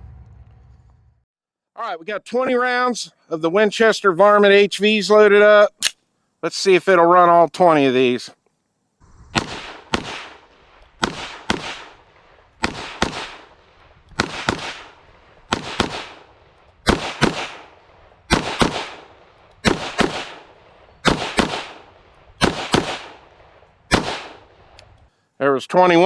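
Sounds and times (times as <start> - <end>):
pistol firing: 9.4 - 12.0, 12.6 - 13.5, 14.2 - 17.7, 18.3 - 23.3, 23.9 - 24.4.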